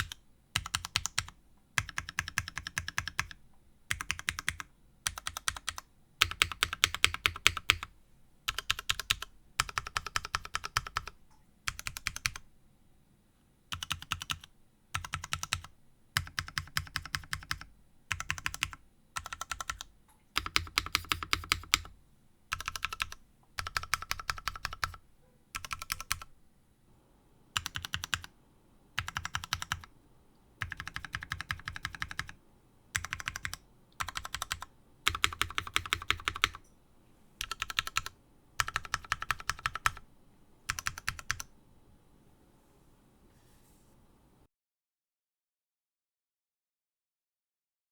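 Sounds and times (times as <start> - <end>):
mechanical keyboard keys clacking: 0.0 - 7.9, 13.8 - 21.9, 22.5 - 25.0, 25.6 - 26.3, 27.6 - 28.3, 29.0 - 29.9, 30.6 - 36.7, 37.4 - 40.0, 40.7 - 41.5.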